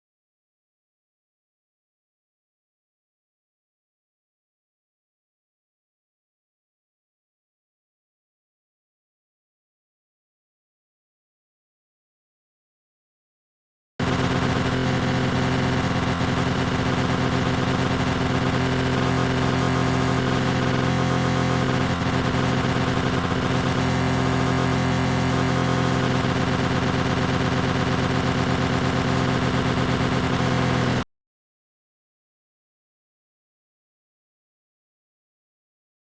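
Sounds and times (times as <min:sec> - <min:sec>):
lawn mower running: 0:14.0 - 0:31.0.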